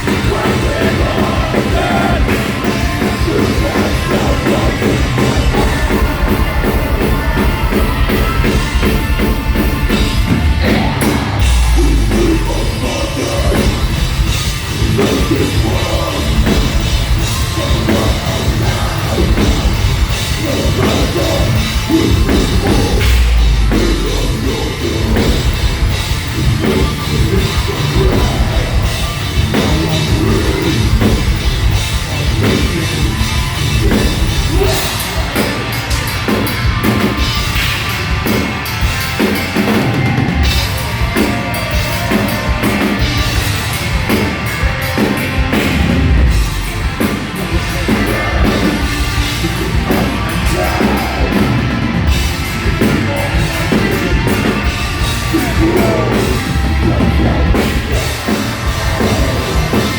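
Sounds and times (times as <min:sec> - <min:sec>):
heavy low hits: 0:00.0 - 0:36.1
metal band playing live: 0:00.0 - 0:59.9
rapid driving drums: 0:00.0 - 0:59.9.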